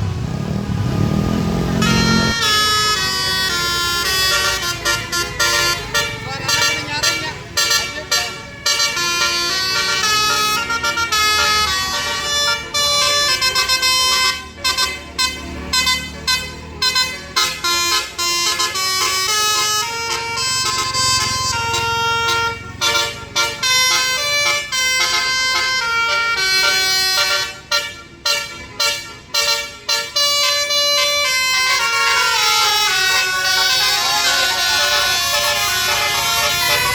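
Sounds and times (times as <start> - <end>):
musical bus horn melody: 0.6 - 36.9.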